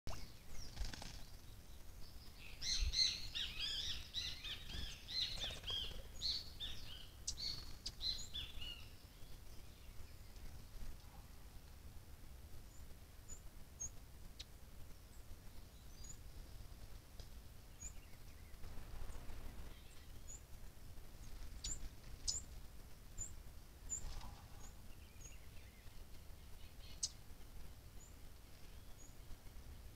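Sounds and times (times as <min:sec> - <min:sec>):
songbirds chirping: 0:00.1 - 0:29.9
low wind rumble: 0:00.3 - 0:29.9
songbird chip calls: 0:02.3 - 0:10.3, 0:26.4 - 0:27.2.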